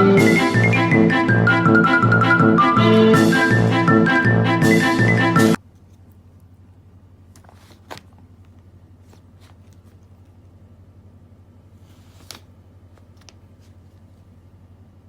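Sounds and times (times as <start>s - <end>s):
paper rustling and crinkling: 7.3s - 10.4s, 11.8s - 14.3s.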